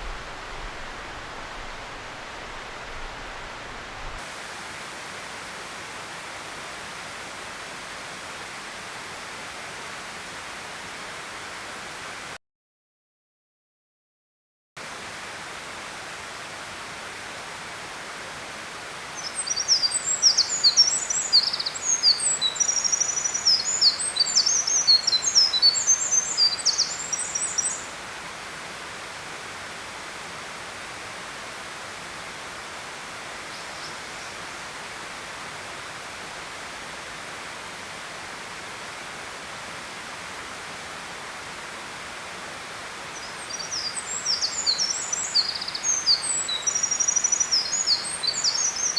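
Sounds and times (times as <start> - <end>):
songbird twittering and trilling: 19.2 - 28.0, 43.2 - 48.9.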